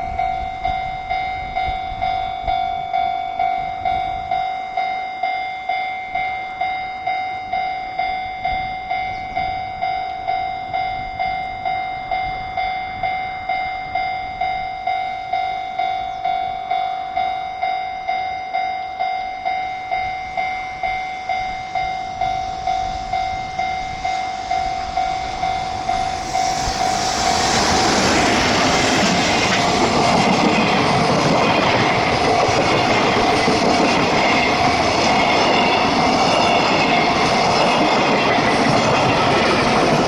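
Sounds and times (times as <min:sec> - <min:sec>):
level crossing bell ringing: 0:00.0 - 0:26.4
train wheels rolling on rails: 0:19.4 - 0:40.0.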